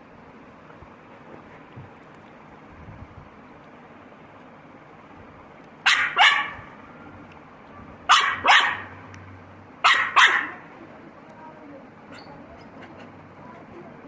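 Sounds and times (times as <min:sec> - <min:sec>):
dog barking: 0:05.8 - 0:06.7, 0:08.1 - 0:09.0, 0:09.8 - 0:10.7.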